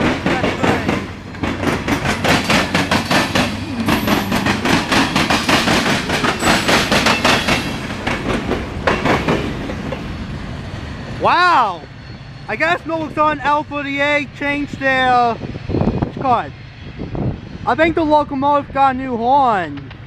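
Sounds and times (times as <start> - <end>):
train wheels clicking over rail joints: 0.0 - 10.6, 19.7 - 20.0
train rumble: 0.0 - 20.0.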